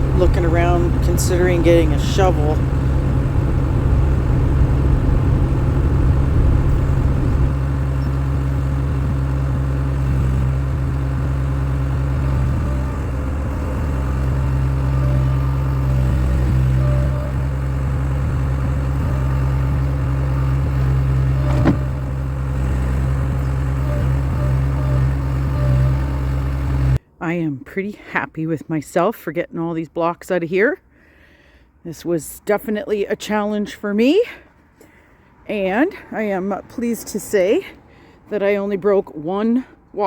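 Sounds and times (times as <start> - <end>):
skid steer engine humming: 0.0 - 27.0.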